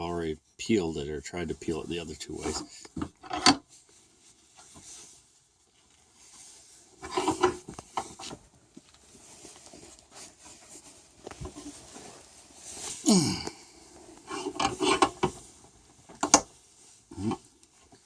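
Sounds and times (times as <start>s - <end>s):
metal clicks and scrapes: 7.0s - 8.3s, 14.2s - 15.4s.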